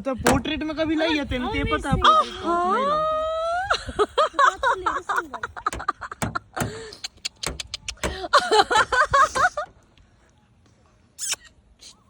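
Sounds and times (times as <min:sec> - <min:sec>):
voice making chirps and clicks: 0:07.0 - 0:08.2, 0:11.2 - 0:12.0.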